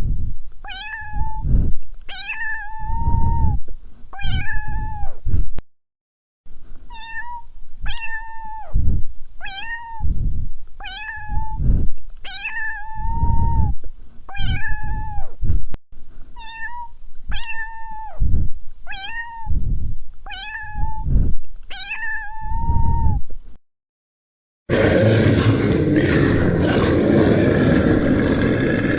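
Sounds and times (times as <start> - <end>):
cat meowing: 0.7 - 1.5, 2.1 - 3.6, 4.2 - 5.2, 6.9 - 8.8, 9.4 - 10.1, 10.8 - 11.6, 12.2 - 15.4, 16.4 - 18.2, 18.9 - 19.6, 20.3 - 21.1, 21.7 - 23.2
low rumbling noise: 10.0 - 10.6, 11.3 - 12.0, 19.5 - 20.0, 24.7 - 28.9.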